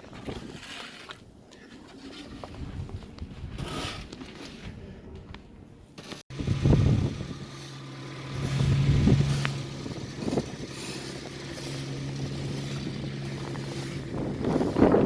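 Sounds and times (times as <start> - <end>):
car engine idling: 6.4 - 15.0.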